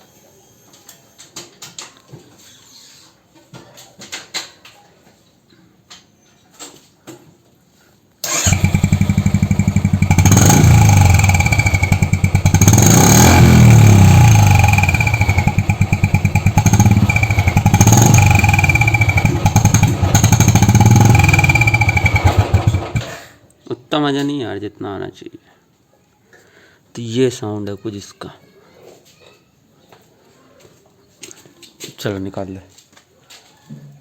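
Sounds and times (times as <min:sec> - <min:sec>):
motorcycle engine revving: 0:08.2 - 0:23.2.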